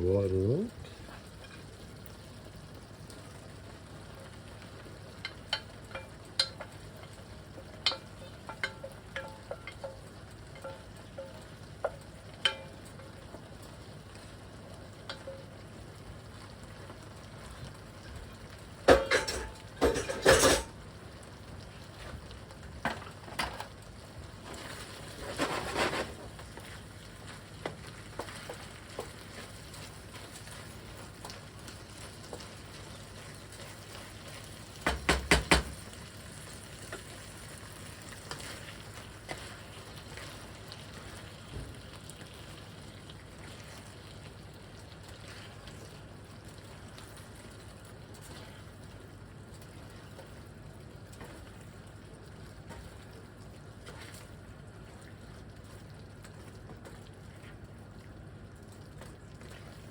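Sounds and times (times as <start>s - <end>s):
food stirred in pan noise: 3.0s - 59.9s
utensil clicking against pan: 5.2s - 7.2s.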